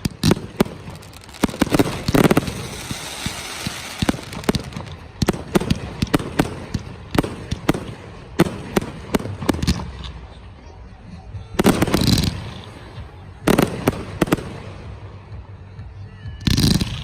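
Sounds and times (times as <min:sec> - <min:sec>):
fireworks crackling hiss: 0:00.0 - 0:07.6
fireworks bangs: 0:00.0 - 0:09.9.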